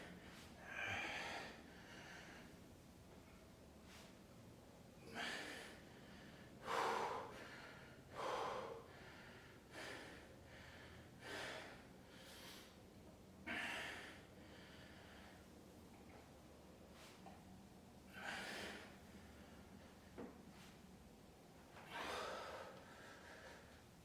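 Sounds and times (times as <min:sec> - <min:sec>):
person breathing hard: 0:00.1 - 0:02.6, 0:05.1 - 0:12.8, 0:21.8 - 0:23.8.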